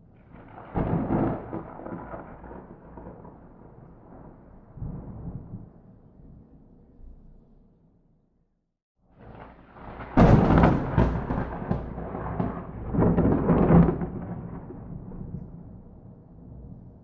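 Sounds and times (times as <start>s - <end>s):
thunder crack and rumble: 0.0s - 6.6s, 9.2s - 17.0s.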